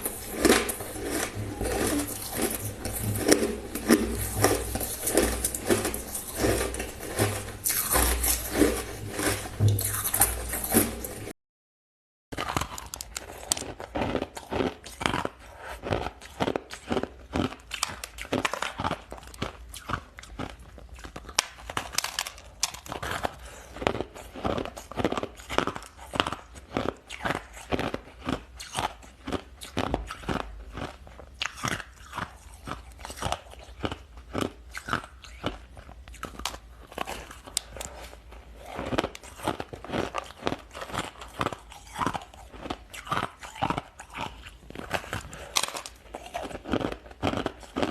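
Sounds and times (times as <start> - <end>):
ice being chewed: 0.0 - 11.3, 12.4 - 47.9.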